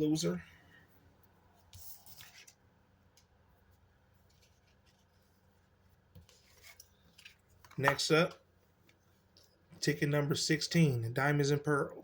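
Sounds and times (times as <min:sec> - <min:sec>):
paper rustling and scraping: 0:01.7 - 0:02.6, 0:04.2 - 0:07.8.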